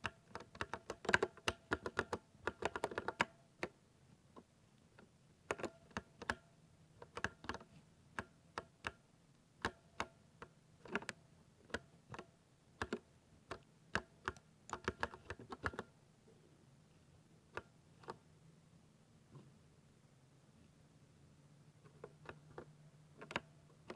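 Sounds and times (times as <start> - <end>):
mechanical keyboard typing: 0.1 - 3.3, 14.0 - 15.9.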